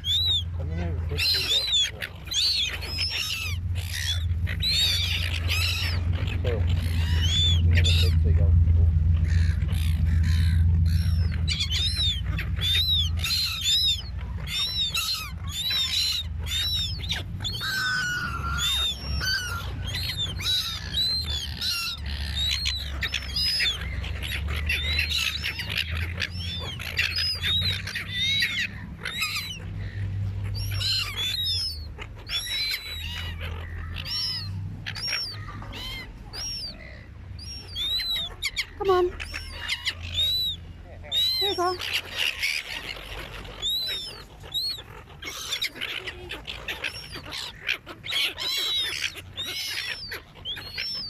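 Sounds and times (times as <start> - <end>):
seagulls squawking: 0.0 - 51.0
low rumble: 2.1 - 32.3.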